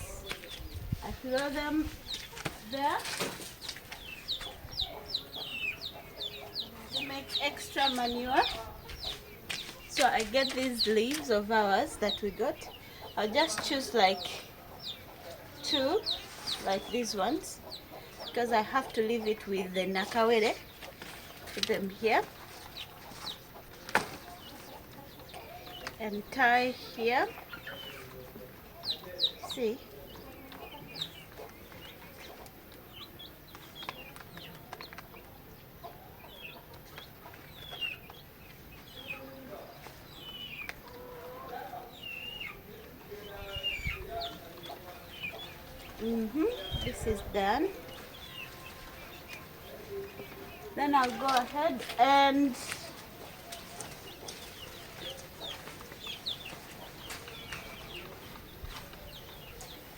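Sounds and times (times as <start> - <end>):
chickens chirping: 0.0 - 59.9
hens clucking: 0.0 - 59.9.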